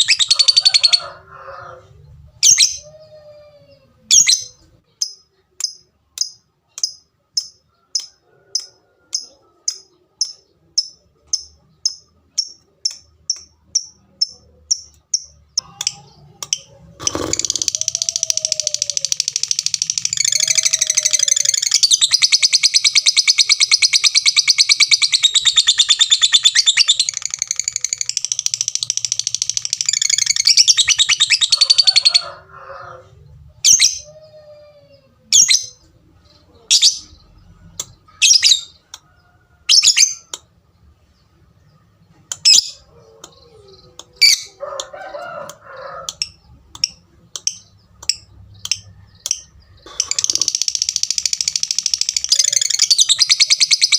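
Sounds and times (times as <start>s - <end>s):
lovebird chattering trill: 4.1s - 32.2s, 46.1s - 53.9s
sharp bird calls: 41.7s - 53.9s.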